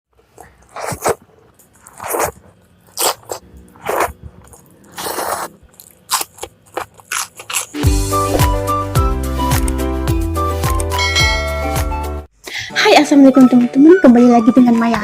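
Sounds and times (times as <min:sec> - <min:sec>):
crunchy chewing: 0:00.2 - 0:07.8.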